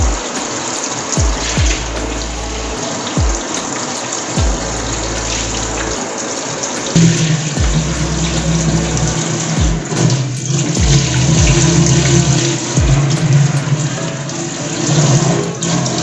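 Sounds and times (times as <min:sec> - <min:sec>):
kick drum: 0:00.0 - 0:00.3, 0:01.2 - 0:01.8, 0:03.2 - 0:03.6, 0:04.4 - 0:04.7, 0:07.6 - 0:07.9, 0:09.6 - 0:09.9, 0:10.8 - 0:11.8, 0:12.8 - 0:13.2
low bass line: 0:01.2 - 0:03.4, 0:04.4 - 0:06.0, 0:07.0 - 0:13.8.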